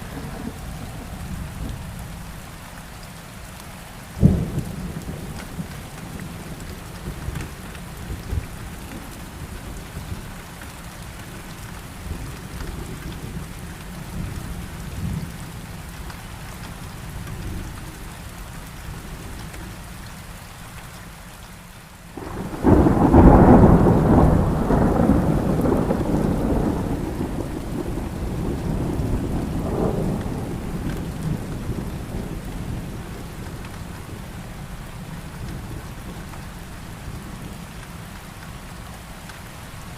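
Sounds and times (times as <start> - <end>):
low thunder rumbles: 0.0 - 2.5, 4.2 - 10.4, 22.2 - 38.0
steady rain: 0.0 - 39.9
loud thunderclap: 22.2 - 33.5.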